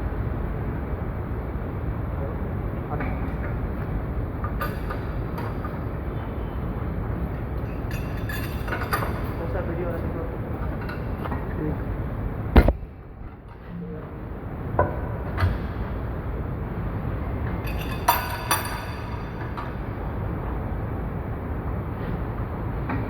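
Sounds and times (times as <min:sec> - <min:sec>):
metal knocks and clinks: 0:07.6 - 0:09.4, 0:17.6 - 0:19.8.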